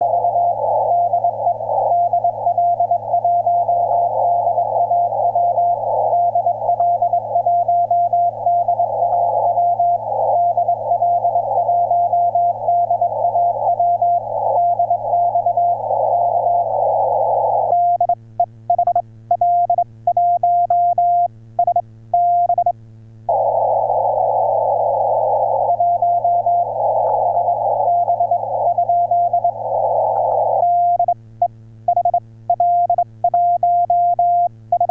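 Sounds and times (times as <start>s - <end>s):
radio band hiss: 0.0s - 17.9s, 23.3s - 31.0s.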